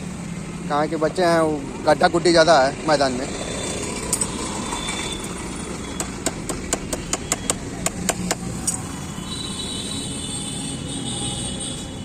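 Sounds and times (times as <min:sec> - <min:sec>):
street traffic: 0:00.0 - 0:12.0
hammer tapping on metal: 0:06.0 - 0:08.5.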